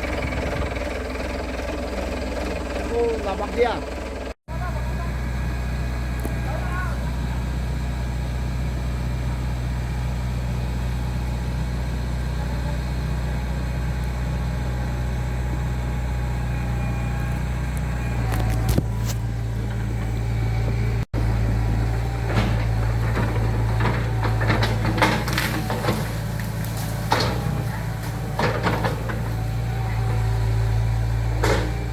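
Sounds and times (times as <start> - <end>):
heavy machinery engine running: 0.0 - 31.9
knocks and clatter: 22.0 - 30.3, 31.3 - 31.9.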